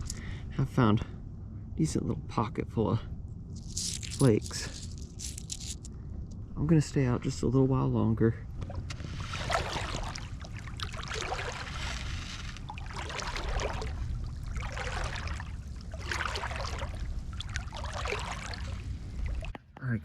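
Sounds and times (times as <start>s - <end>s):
low rumble: 0.0s - 19.6s
water sloshing: 8.5s - 19.6s.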